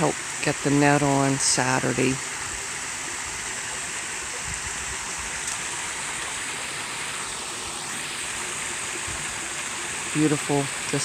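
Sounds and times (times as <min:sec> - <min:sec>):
running water rushing: 0:00.0 - 0:11.0.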